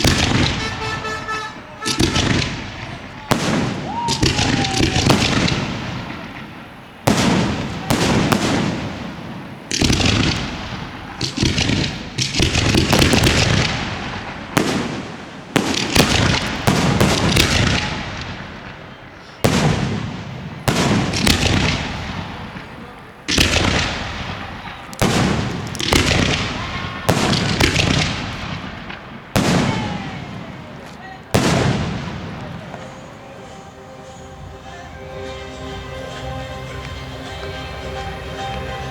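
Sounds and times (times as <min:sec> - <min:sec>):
fireworks shells bursting: 0:00.0 - 0:38.9.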